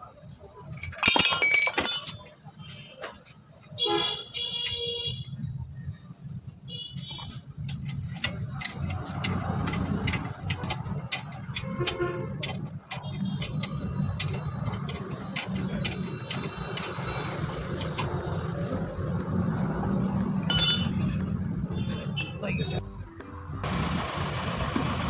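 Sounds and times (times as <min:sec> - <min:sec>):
sharp clicks and taps: 0:07.6 - 0:17.0.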